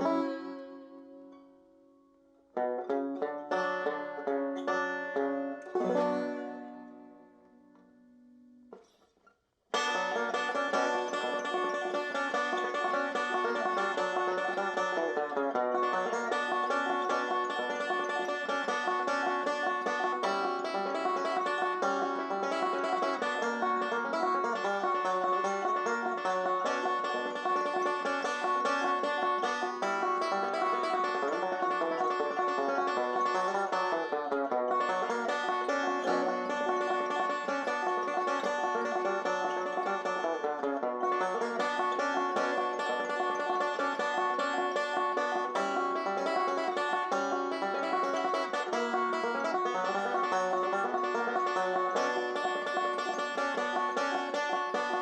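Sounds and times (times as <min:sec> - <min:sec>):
banjo picking bluegrass: 0:00.0 - 0:01.7, 0:02.4 - 0:09.0, 0:09.7 - 0:55.0.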